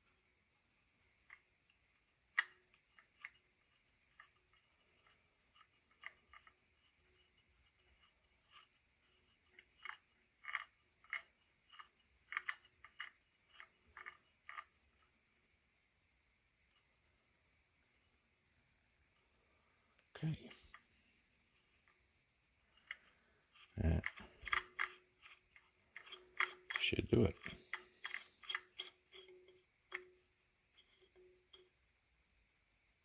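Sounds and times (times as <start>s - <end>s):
hand tool clicking on metal screw: 22.8s - 30.1s.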